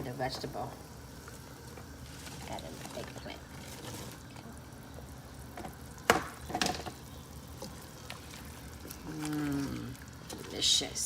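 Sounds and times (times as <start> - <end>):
simmering liquid: 0.2 - 11.0.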